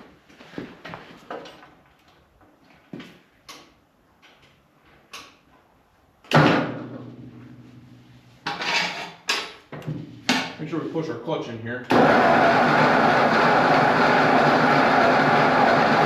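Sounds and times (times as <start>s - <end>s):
tools and metal parts clattering: 8.4s - 9.6s.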